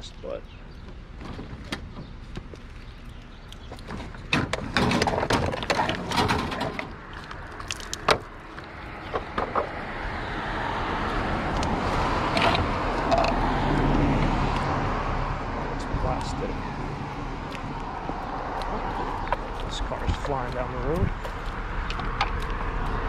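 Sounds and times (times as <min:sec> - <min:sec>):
steady vehicle noise: 0:00.0 - 0:23.0
hard objects knocking and clattering: 0:04.3 - 0:07.0.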